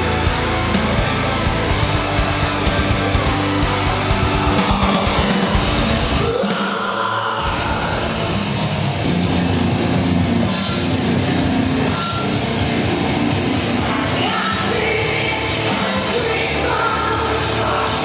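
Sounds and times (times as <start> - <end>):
sung and yelled vocals: 0.0 - 9.4, 13.3 - 18.0
heavy metal band: 0.0 - 18.0.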